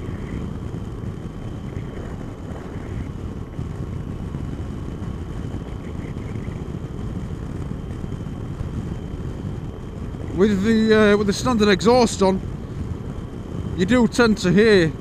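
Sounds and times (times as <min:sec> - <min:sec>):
motorcycle engine: 0:00.0 - 0:11.5
road noise: 0:00.0 - 0:15.0
wind rushing over microphone: 0:00.0 - 0:15.0.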